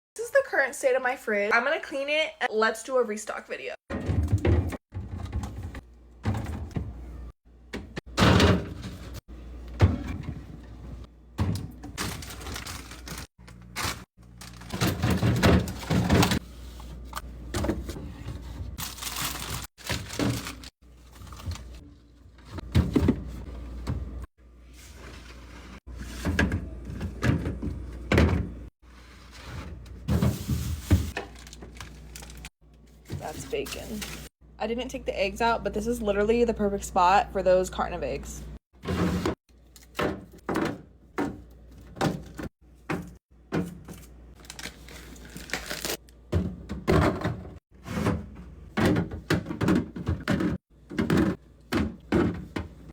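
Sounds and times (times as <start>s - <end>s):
items knocking on fridge shelves: 3.9s - 16.4s, 22.4s - 24.3s, 26.0s - 28.7s, 38.8s - 44.1s, 46.2s - 52.9s
fridge drawers sliding: 3.9s - 21.8s, 22.4s - 31.5s, 38.8s - 39.4s, 44.9s - 52.7s
containers clunking and rustling: 3.9s - 34.3s, 38.8s - 52.9s
fridge drawers sliding out: 22.5s - 31.5s, 38.8s - 39.4s.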